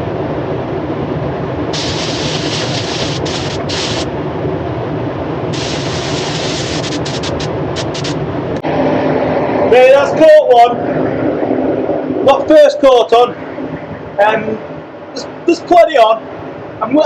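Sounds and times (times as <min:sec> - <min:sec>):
extraction fans roaring: 0:00.0 - 0:17.0
spray gun hissing: 0:01.8 - 0:04.1, 0:05.5 - 0:08.2.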